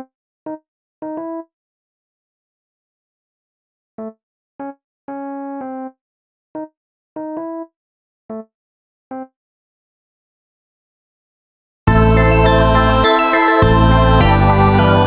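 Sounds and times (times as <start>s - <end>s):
synthesized piano chords: 11.9s - 15.0s.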